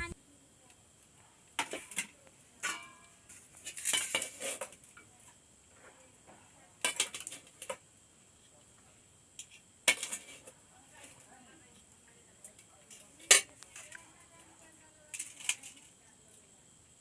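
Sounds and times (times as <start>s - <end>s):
metal utensils clinking on cookware: 1.6s - 4.8s, 6.8s - 7.7s, 9.9s - 10.5s, 12.9s - 14.0s.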